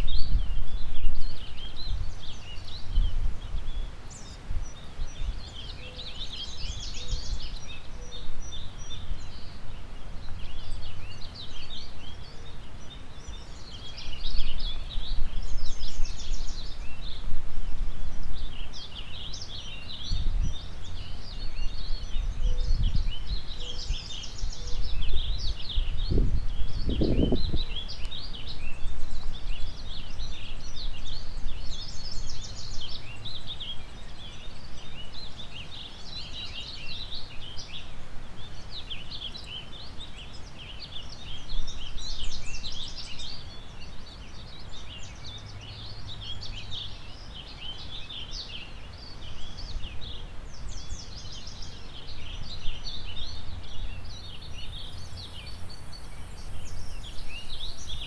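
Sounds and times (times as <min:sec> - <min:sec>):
birds chirping and singing: 0:18.2 - 0:37.9, 0:38.7 - 0:58.0.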